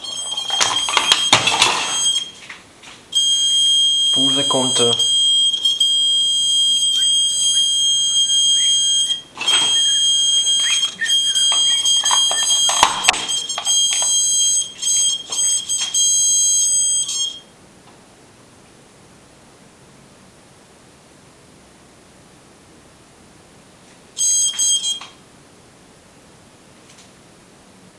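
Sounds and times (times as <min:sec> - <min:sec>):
high-pitched electronic alarm buzzer: 0:03.2 - 0:17.4, 0:24.2 - 0:25.1.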